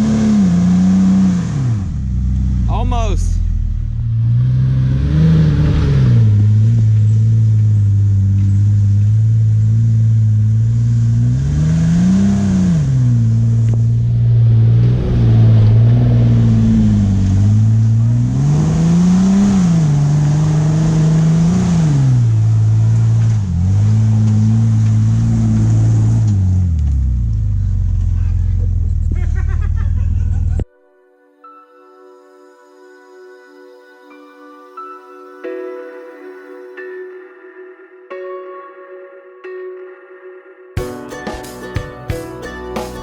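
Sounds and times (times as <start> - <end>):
engine revving at low speed: 0.0 - 2.7, 3.4 - 30.6.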